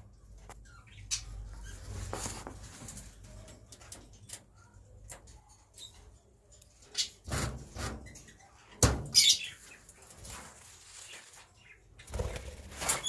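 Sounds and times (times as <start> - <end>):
caged birds shifting: 1.1 - 6.2, 6.8 - 13.0
wing flapping: 12.1 - 13.0.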